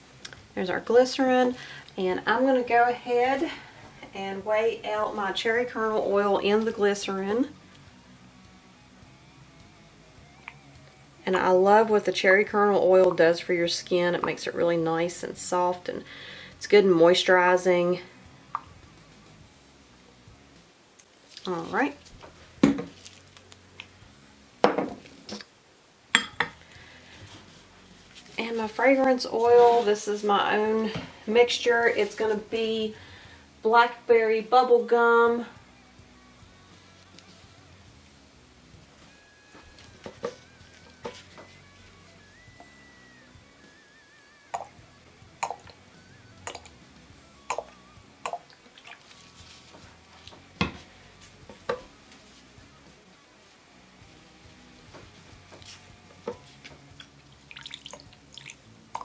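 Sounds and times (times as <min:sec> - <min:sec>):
kitchen items knocking and clinking: 0:22.6 - 0:23.0, 0:24.6 - 0:25.1.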